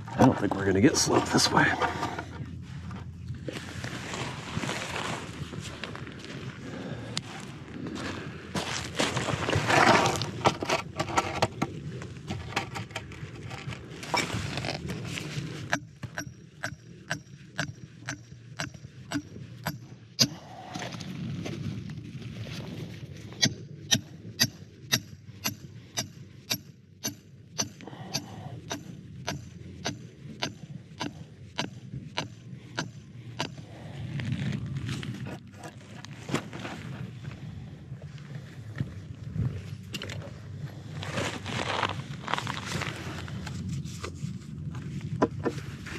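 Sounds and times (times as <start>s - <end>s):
crunching and scraping: 0.0s - 26.0s, 27.0s - 45.9s
sharp clicks and knocks: 15.7s - 20.9s, 23.4s - 33.6s.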